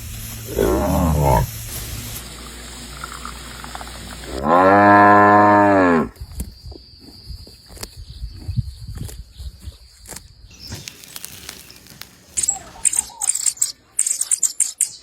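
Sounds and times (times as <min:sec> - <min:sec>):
cow mooing: 0:00.5 - 0:01.5, 0:04.3 - 0:06.1.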